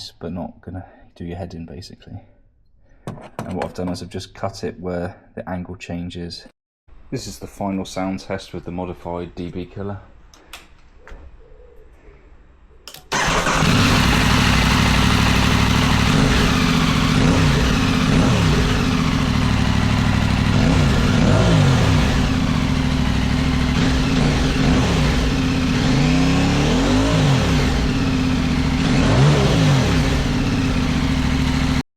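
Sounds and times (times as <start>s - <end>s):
motorcycle engine revving: 13.1s - 31.8s.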